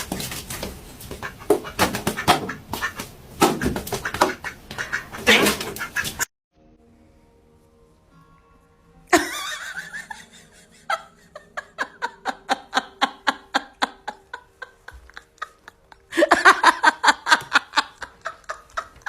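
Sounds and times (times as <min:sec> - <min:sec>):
rhythmic bursts of laughter: 0:09.2 - 0:19.0.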